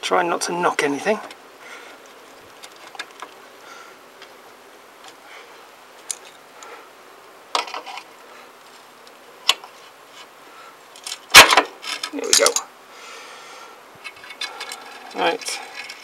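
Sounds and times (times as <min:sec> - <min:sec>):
light clicks of small metal parts: 0:06.0 - 0:06.7, 0:11.8 - 0:12.6, 0:14.0 - 0:16.0.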